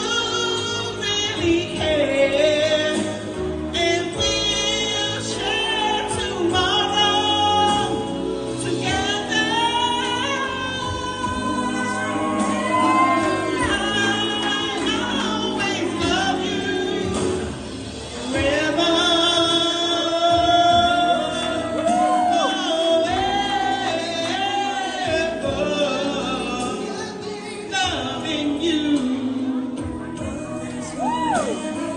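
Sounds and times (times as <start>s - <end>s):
musical accompaniment: 0.0s - 31.9s
person singing with vibrato: 0.0s - 31.9s.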